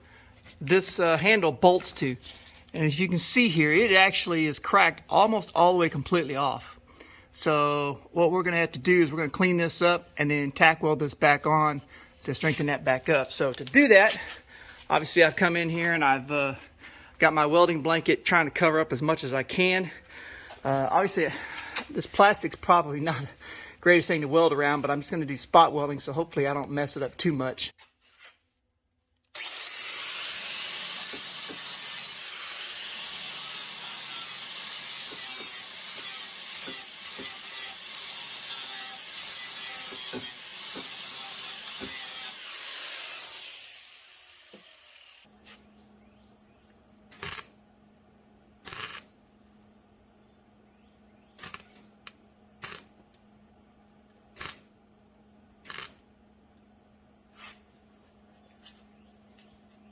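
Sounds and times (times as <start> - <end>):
power grinder on metal: 29.4 - 45.3.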